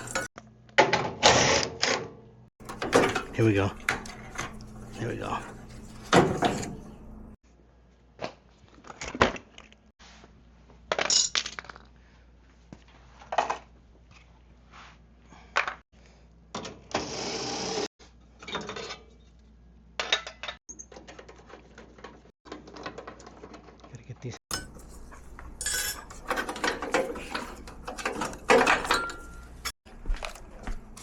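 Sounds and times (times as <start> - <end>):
metal scrape: 0.0 - 0.3, 24.5 - 29.7
metal tools clinking and clanking: 0.0 - 0.3, 2.6 - 7.0, 22.5 - 29.8.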